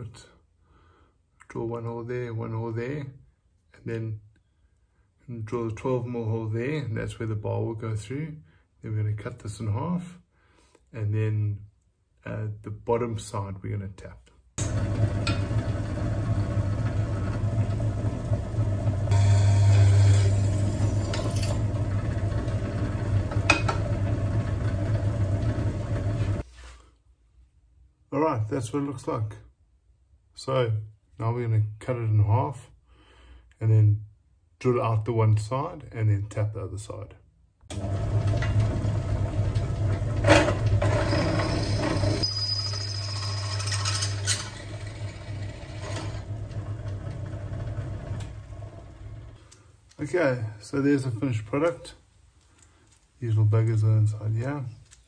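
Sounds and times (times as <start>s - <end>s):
electric drill drilling metal: 14.6s - 26.4s, 38.0s - 49.3s
power tool motor whining: 14.6s - 26.4s, 37.8s - 49.3s.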